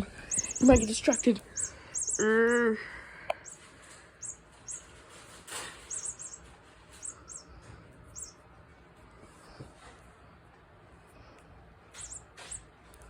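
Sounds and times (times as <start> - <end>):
mouse squeaking: 0.0 - 2.8, 4.2 - 8.4, 12.0 - 12.7.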